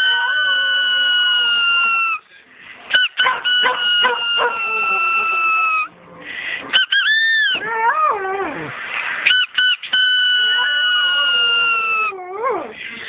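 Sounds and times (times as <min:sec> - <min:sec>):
dog howling: 0:00.0 - 0:02.2, 0:03.2 - 0:05.9, 0:10.1 - 0:12.8
squeak toy whistling: 0:02.9 - 0:05.9, 0:06.8 - 0:07.6, 0:09.3 - 0:12.1.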